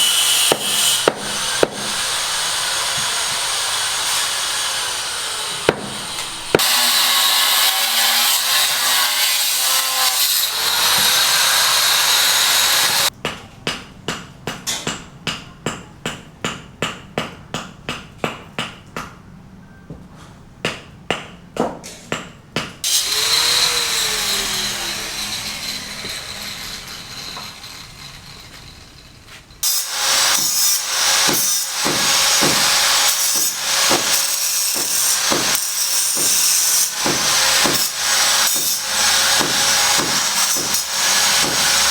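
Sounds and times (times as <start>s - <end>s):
sawing power tool: 0.0s - 13.1s, 22.8s - 41.9s.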